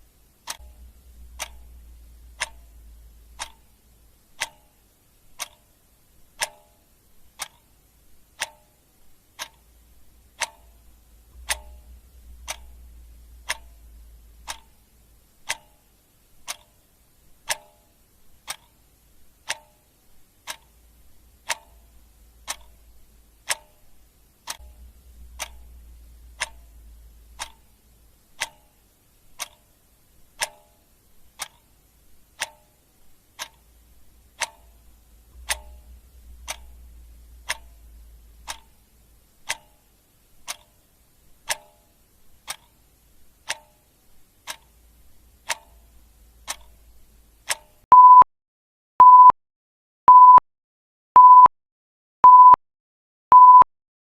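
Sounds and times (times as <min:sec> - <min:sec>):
clock ticking: 0:00.0 - 0:48.2
electronic timer alarm beeps: 0:47.9 - 0:48.3, 0:49.0 - 0:49.4, 0:50.1 - 0:50.4, 0:51.2 - 0:51.5, 0:52.2 - 0:52.6, 0:53.3 - 0:53.7.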